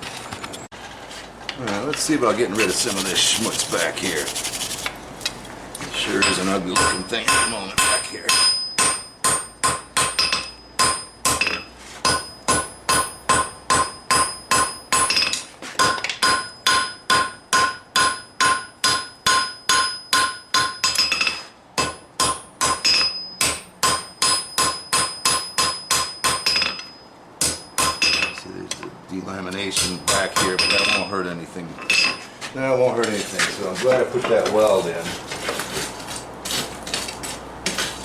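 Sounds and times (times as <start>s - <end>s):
hammer striking steel on anvil: 6.2s - 28.4s, 29.7s - 31.2s.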